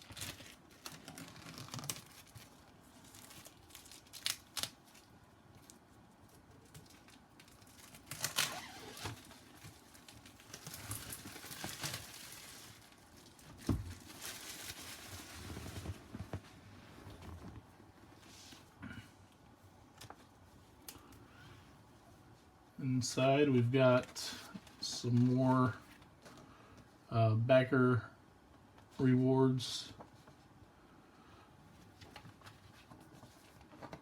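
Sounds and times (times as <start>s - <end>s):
packaging wrap tearing and crinkling: 0.0s - 16.1s.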